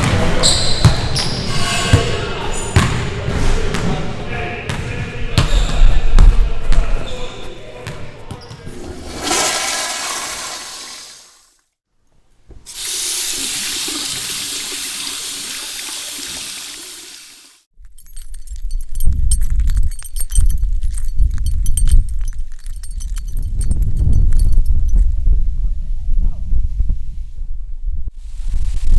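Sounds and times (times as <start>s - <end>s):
rushing water: 8.9s - 11.4s, 12.7s - 17.6s.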